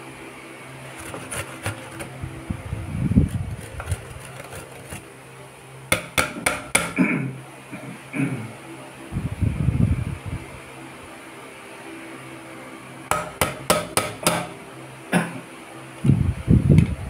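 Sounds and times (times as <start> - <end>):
sharp kitchen taps: 5.9 - 7.0, 13.1 - 14.5.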